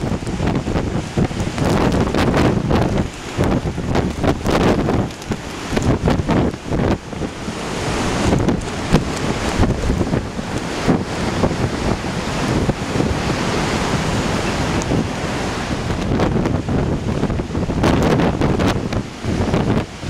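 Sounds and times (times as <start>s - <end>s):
surf breaking ashore: 0.0s - 20.0s
wind buffeting microphone: 0.0s - 20.0s.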